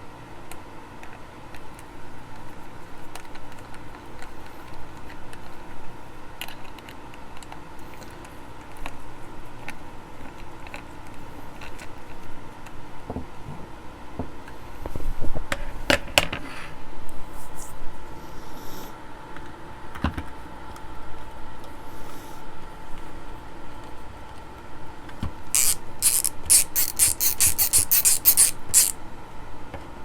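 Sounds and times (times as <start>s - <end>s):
plastic parts and screws clicking: 25.6s - 29.0s.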